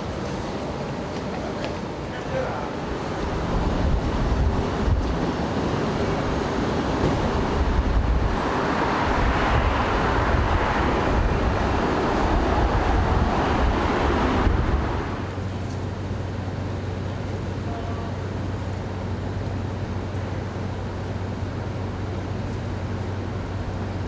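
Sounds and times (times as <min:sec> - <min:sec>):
rumbling vehicle road noise: 0:00.0 - 0:24.0.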